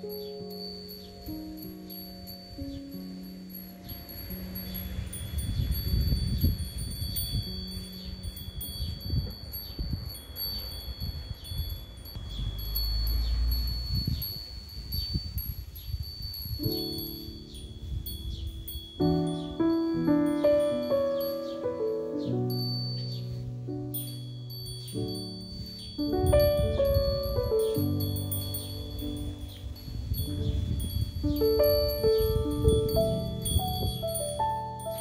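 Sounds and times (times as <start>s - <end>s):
music: 0.0s - 12.2s, 16.0s - 35.0s
metal wind chimes tinkling: 0.0s - 35.0s
low rumbling noise: 3.2s - 21.2s.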